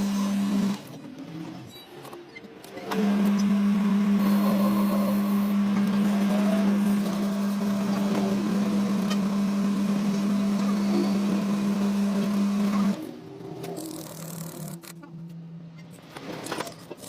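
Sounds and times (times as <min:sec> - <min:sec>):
machine humming: 0:02.8 - 0:15.8.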